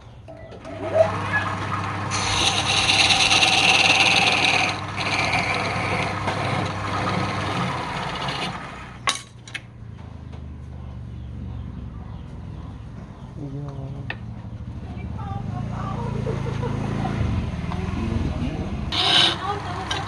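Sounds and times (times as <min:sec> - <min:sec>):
lathe motor hum: 0:00.6 - 0:09.0, 0:18.9 - 0:20.0
wood abrading on a spinning lathe: 0:00.6 - 0:09.1, 0:18.9 - 0:20.0.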